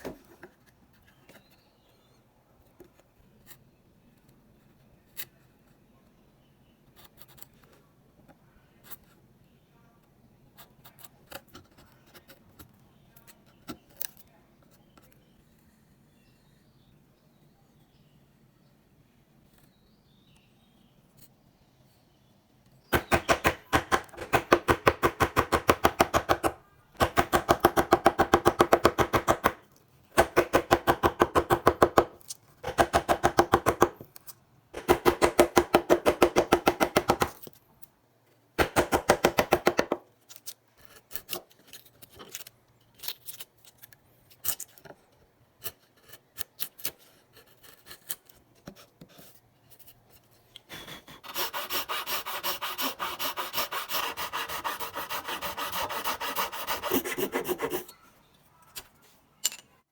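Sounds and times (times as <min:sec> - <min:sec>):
hand tool working wood: 0:50.7 - 0:57.9.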